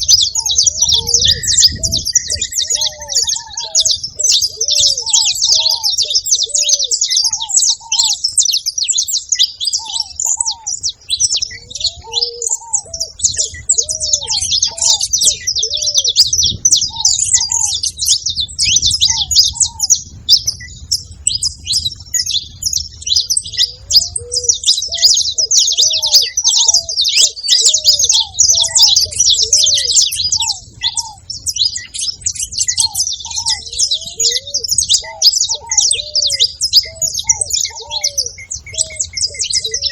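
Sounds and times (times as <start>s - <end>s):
dove cooing: 0.0s - 39.9s
finches chirping and singing: 0.0s - 39.9s.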